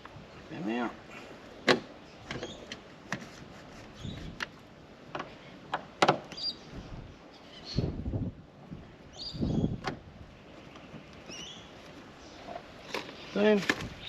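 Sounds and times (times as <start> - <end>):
handling rustle: 10.6 - 14.0.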